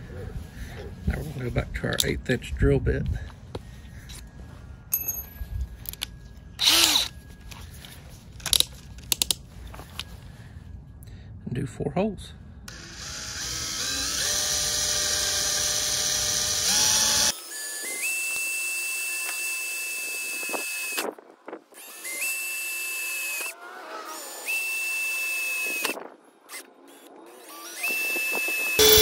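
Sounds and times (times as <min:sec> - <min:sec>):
electric drill whining: 0:06.6 - 0:07.2, 0:12.7 - 0:21.0, 0:21.8 - 0:29.0.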